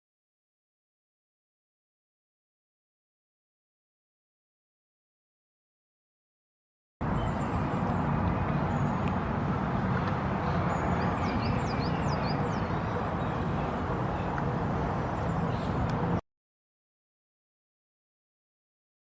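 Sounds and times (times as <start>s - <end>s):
bird chirping: 7.0s - 9.0s, 10.4s - 14.5s.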